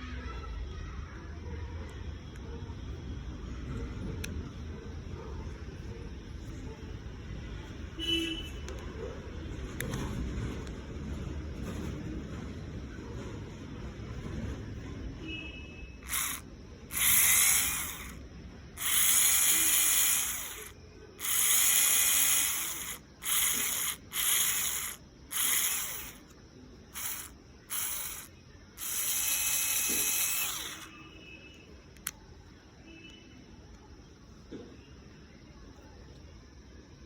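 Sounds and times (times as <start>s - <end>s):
cordless screwdriver whirring: 16.0s - 18.2s, 18.8s - 31.0s.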